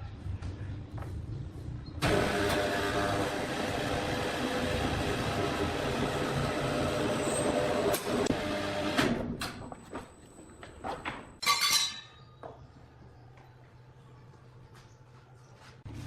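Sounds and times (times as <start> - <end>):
engine running: 2.0 - 9.0.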